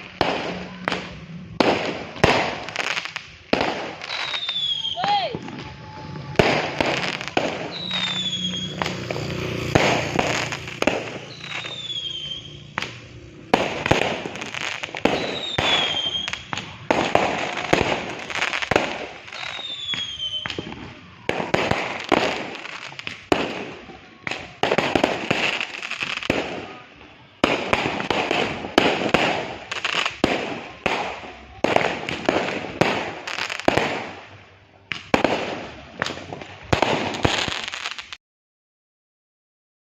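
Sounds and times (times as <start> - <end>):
falling firework whistles: 0.0 - 26.8
fireworks bangs and crackling: 0.0 - 38.2.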